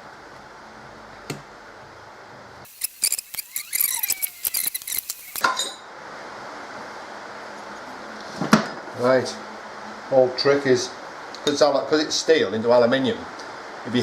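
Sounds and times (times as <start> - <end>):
metal parts clinking and rattling: 2.7 - 5.5.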